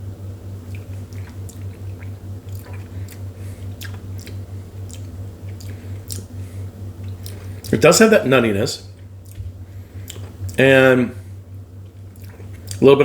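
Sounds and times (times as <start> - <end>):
low pulsing hum: 0.0 - 13.0
lip smacks and tongue clicks: 0.6 - 6.3, 7.0 - 7.8, 9.2 - 10.6, 11.8 - 12.8.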